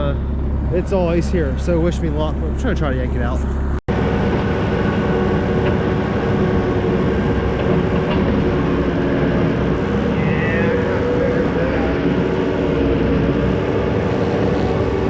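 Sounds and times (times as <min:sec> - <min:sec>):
skid steer engine under load: 0:03.4 - 0:15.0.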